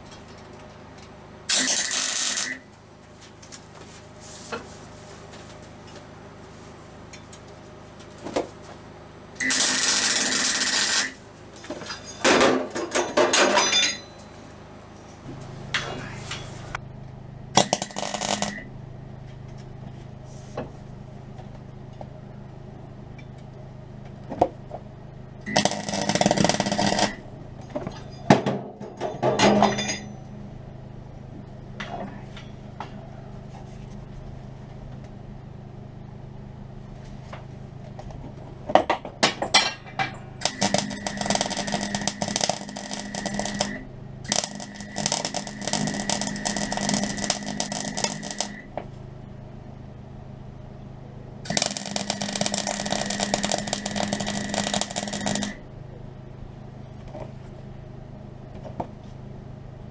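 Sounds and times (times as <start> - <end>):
arc welding crackling: 0.0 - 16.8, 40.4 - 48.7, 51.5 - 55.6
background hum: 0.0 - 29.0, 29.7 - 59.9
metal parts clinking and scraping: 0.1 - 2.6, 9.4 - 16.8.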